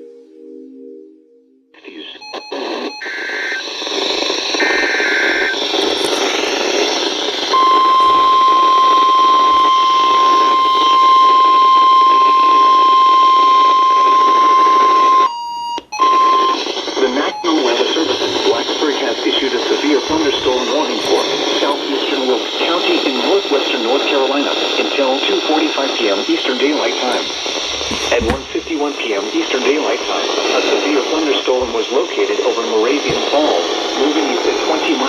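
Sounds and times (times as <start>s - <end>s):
radio static hiss: 1.8s - 11.0s, 16.4s - 35.0s
single-pitch warning alarm tone: 7.5s - 18.8s.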